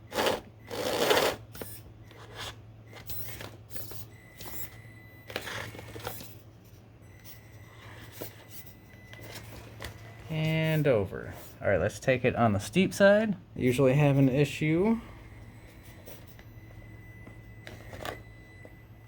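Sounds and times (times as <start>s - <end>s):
small electric motor whining: 0.0s - 6.4s.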